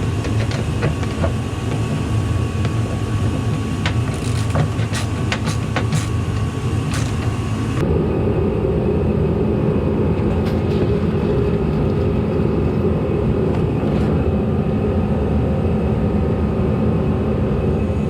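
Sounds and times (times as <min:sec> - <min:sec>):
mechanical drone: 0:00.0 - 0:18.0.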